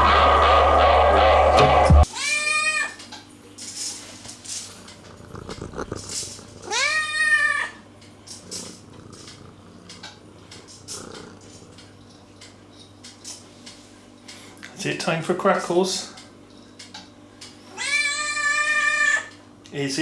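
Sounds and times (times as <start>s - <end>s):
cat meowing: 2.1s - 3.0s, 5.4s - 7.8s, 17.7s - 19.3s
faint clicks and rustling: 3.0s - 7.2s, 8.0s - 14.4s.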